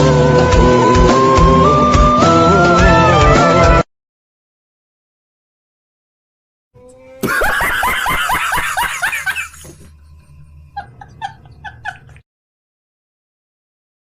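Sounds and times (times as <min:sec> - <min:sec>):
rapid laughing: 0:07.2 - 0:09.9, 0:10.7 - 0:12.2.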